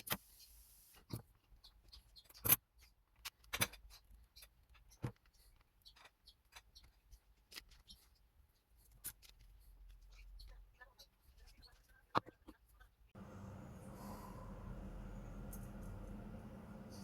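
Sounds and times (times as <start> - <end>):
clicks and knocks of handled materials: 1.0 - 12.9.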